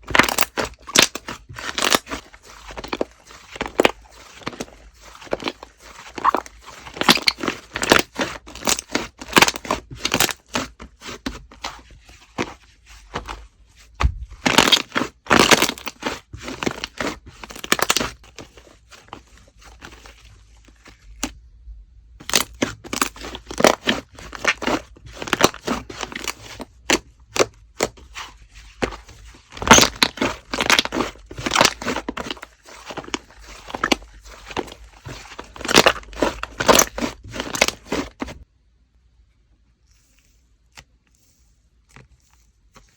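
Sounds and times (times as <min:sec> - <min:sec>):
slime crackling and popping: 0:00.0 - 0:10.5, 0:14.0 - 0:18.2, 0:29.6 - 0:38.4.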